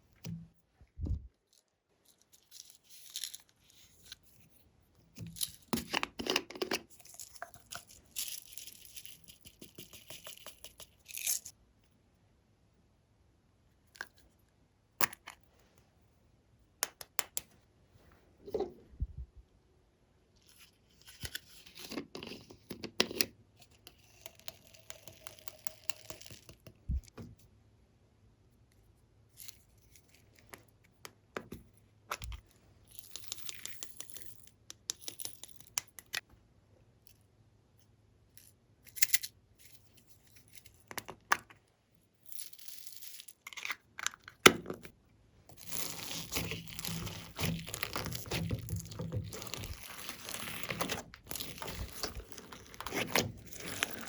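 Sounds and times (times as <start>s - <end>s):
slime squishing: 45.5s - 54.0s
slime tearing: 45.5s - 54.0s.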